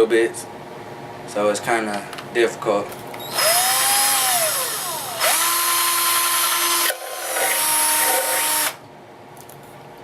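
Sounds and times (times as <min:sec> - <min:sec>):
electric drill drilling into metal: 0:03.2 - 0:08.8.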